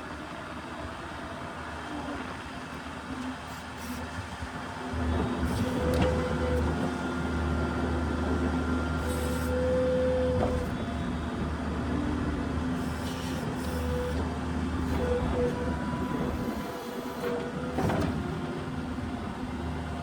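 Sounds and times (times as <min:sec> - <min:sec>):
diesel engine running: 0:04.4 - 0:20.0.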